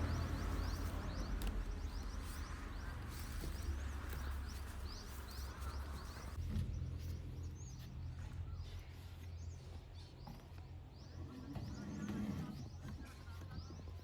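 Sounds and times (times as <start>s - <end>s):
diesel engine humming: 0.0s - 8.9s
small birds chirping: 0.0s - 14.0s.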